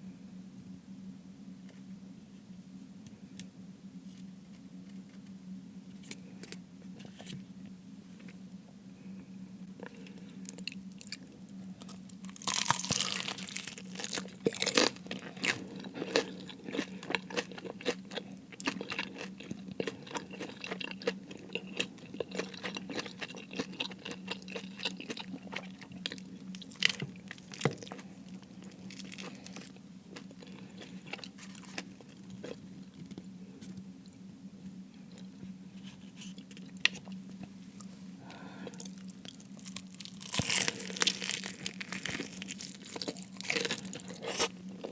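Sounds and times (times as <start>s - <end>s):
crunchy chewing of fried food: 9.1s - 44.9s.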